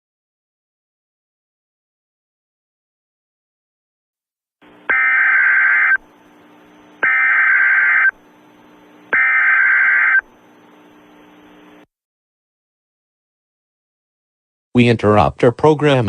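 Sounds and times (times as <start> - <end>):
faint hum: 4.6 - 11.9
warbling digital data tones: 4.9 - 6.0, 7.0 - 8.2, 9.1 - 10.3.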